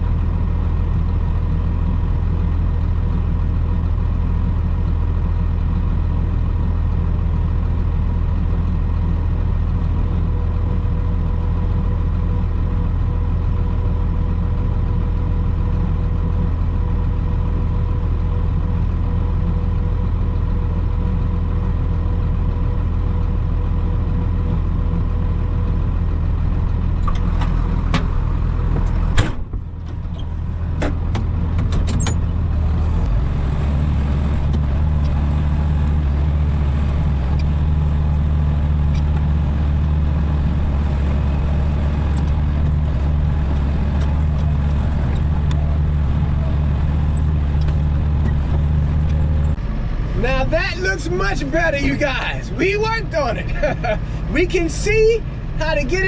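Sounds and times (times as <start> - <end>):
vehicle engine running: 0.0 - 56.0.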